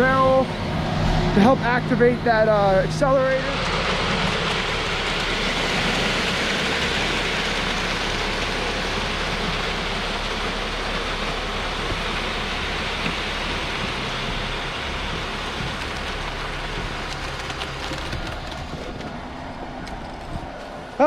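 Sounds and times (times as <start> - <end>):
truck engine revving: 0.0 - 21.0.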